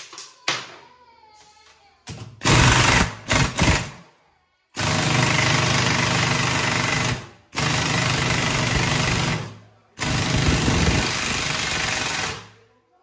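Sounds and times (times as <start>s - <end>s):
pneumatic impact wrench bursts: 2.4s - 4.0s, 4.8s - 12.5s.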